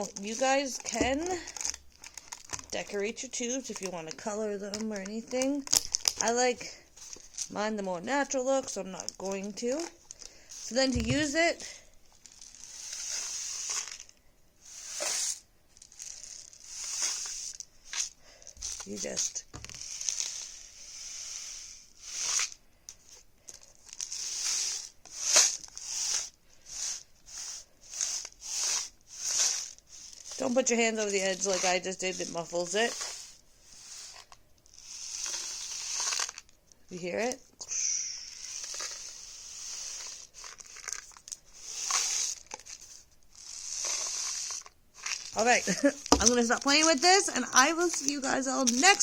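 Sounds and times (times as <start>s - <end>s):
rice pouring through rain stick: 12.2s - 19.1s, 19.7s - 22.6s, 23.7s - 36.5s, 38.0s - 49.0s
rain stick rice pouring: 43.4s - 47.2s.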